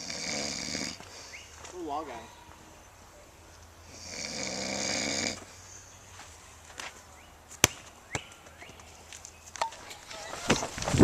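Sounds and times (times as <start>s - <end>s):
man snoring: 0.0s - 1.0s, 3.9s - 5.4s.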